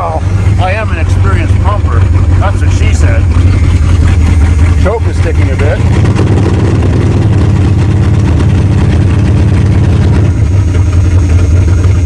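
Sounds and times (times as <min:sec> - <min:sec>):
car engine running loud: 0:00.0 - 0:12.0.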